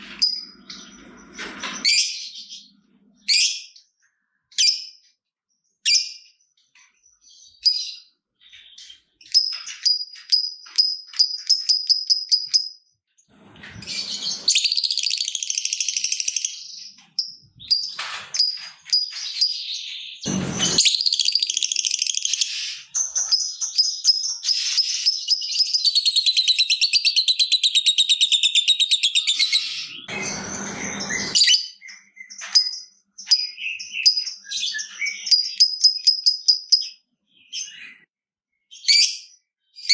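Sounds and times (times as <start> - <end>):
harsh bird bursts: 20.3 - 21.4, 30.1 - 31.6
bird trilling chatter: 29.1 - 31.6.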